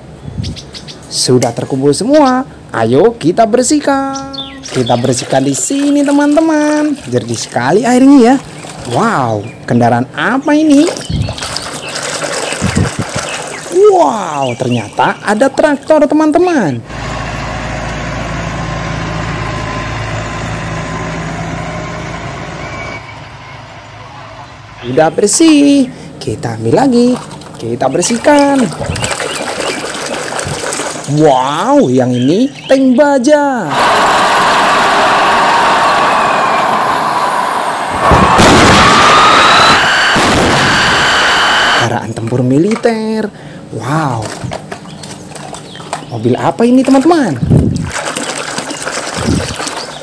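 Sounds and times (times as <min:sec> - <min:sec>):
tractor engine idling: 0:16.9 - 0:25.0
faint whistling tones: 0:22.5 - 0:25.0
steady rushing noise: 0:33.7 - 0:41.9
artillery blast: 0:37.9 - 0:41.4.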